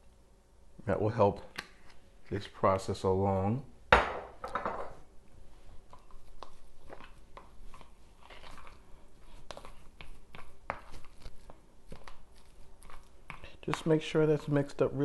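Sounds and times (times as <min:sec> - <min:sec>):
wet squishing of food mixing: 0:05.4 - 0:15.0.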